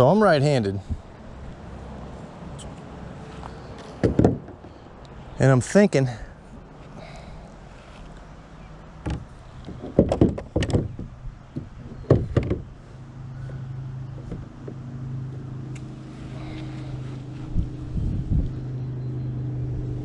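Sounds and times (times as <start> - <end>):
plastic knocks against hollow hull: 4.0 - 4.8, 9.0 - 12.7, 13.4 - 15.4
steady low hum: 11.1 - 20.0.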